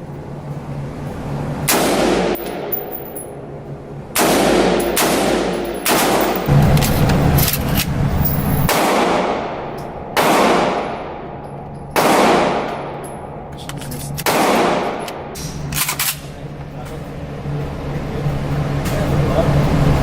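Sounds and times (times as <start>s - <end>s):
echoing gunshots: 1.7s - 3.2s, 4.1s - 6.7s, 8.7s - 13.0s, 14.2s - 15.4s.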